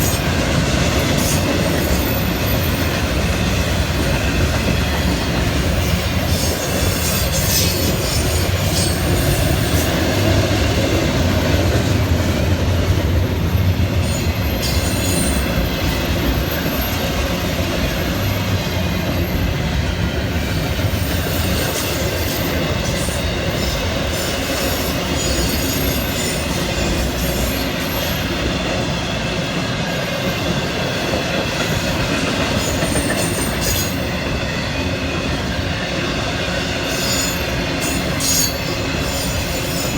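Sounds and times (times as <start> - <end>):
train wheels rumbling on rails: 0.0 - 39.9
wheel squeal: 14.1 - 15.5, 36.9 - 39.9.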